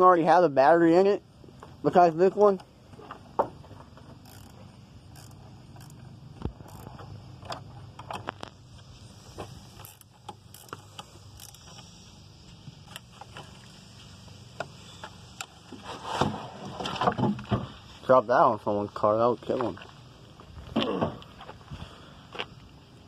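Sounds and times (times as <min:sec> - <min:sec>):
tools and parts clicking: 0:04.0 - 0:08.5, 0:09.7 - 0:11.9.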